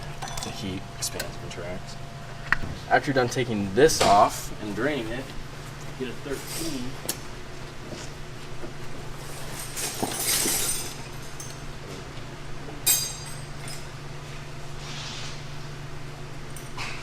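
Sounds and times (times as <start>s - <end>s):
metal hand tools clinking: 12.9s - 13.8s.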